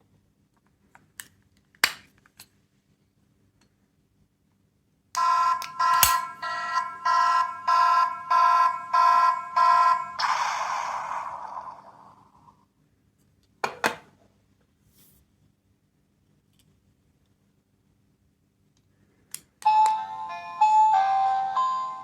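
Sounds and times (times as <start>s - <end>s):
toy pulsing alarm tone: 5.2s - 12.3s.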